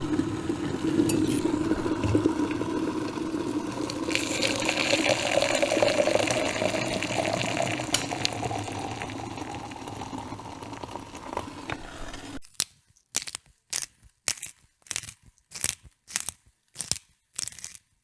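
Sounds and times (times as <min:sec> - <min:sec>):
tap water filling a container: 0:00.0 - 0:12.4.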